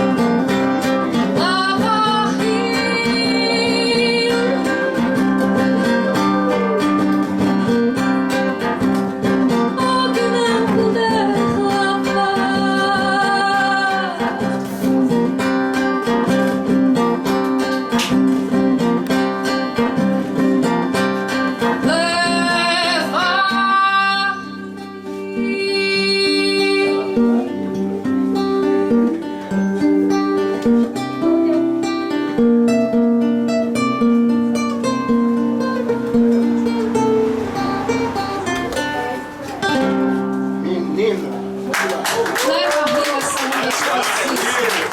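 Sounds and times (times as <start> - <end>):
held melody line: 0.0 - 41.1
acoustic guitar strumming chords: 0.0 - 41.7.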